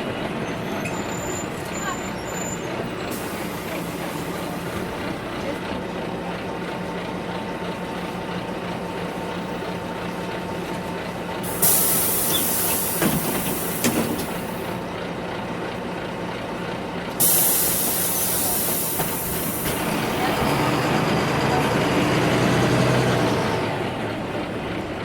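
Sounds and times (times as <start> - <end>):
bus engine droning: 0.0 - 25.0
compressed air hiss: 11.5 - 14.6, 17.2 - 19.7.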